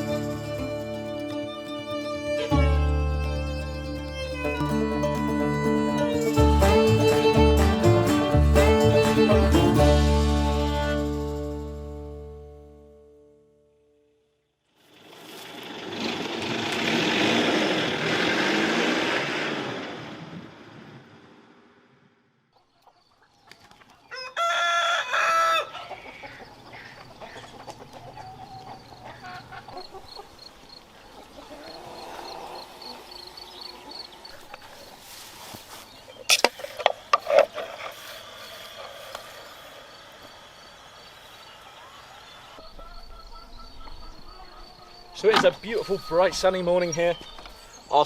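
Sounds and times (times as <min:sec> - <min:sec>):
hens clucking: 0:23.7 - 0:35.3
rooster crowing: 0:24.1 - 0:29.8.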